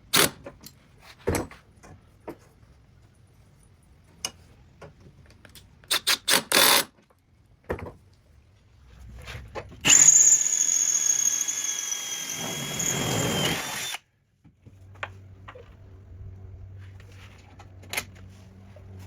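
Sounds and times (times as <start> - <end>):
power drill whining: 9.8 - 14.0.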